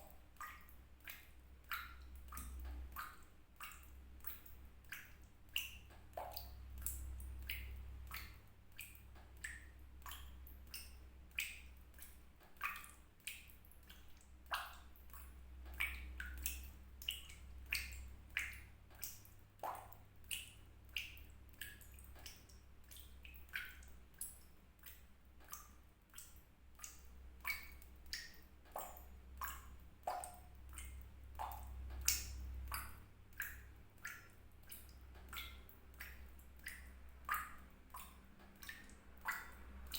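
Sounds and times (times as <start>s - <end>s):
water drops plinking into water: 0.0s - 39.9s.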